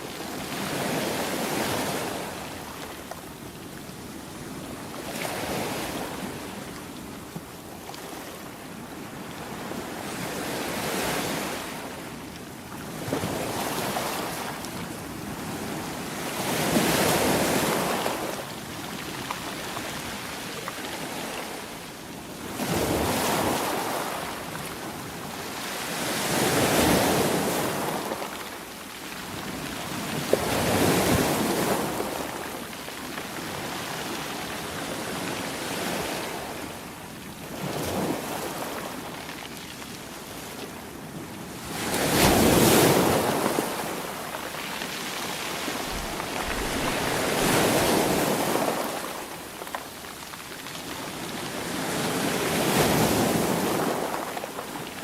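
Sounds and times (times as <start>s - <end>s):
sea waves washing: 41.4s - 54.6s.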